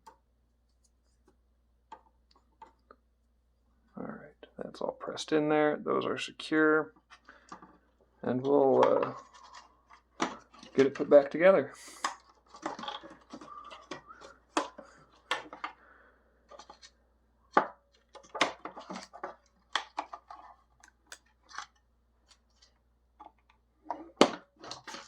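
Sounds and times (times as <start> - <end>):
plastic clicks taps and scrapes: 16.5 - 25.0.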